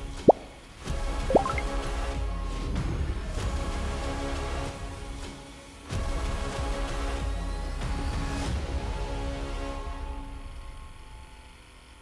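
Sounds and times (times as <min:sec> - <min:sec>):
background music with sustained tones: 0:00.0 - 0:12.0
rising plops: 0:00.1 - 0:00.6, 0:01.3 - 0:01.7.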